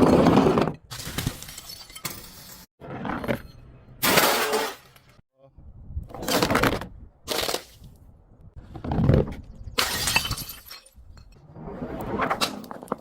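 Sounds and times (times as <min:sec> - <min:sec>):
glass bottles shattering: 0:00.9 - 0:02.7, 0:09.8 - 0:11.0.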